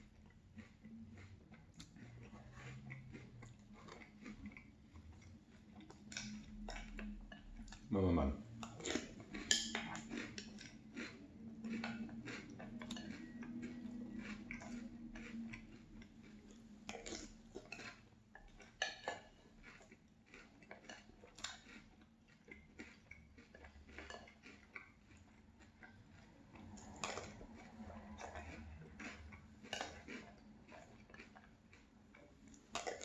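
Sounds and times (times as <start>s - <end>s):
crunchy chewing: 0.0s - 33.0s.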